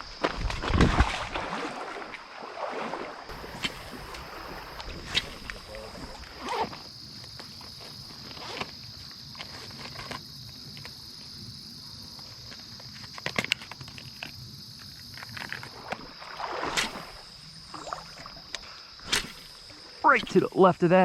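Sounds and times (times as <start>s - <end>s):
moving water: 0.0s - 10.9s, 11.8s - 21.0s
insects trilling: 0.0s - 21.0s
sharp clicks or splashes: 0.2s - 6.5s, 15.1s - 20.4s.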